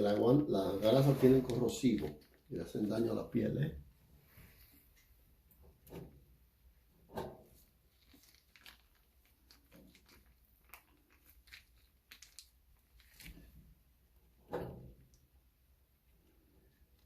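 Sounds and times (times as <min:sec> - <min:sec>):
small clicks and crinkly rustles: 0:01.4 - 0:03.0, 0:07.5 - 0:13.7.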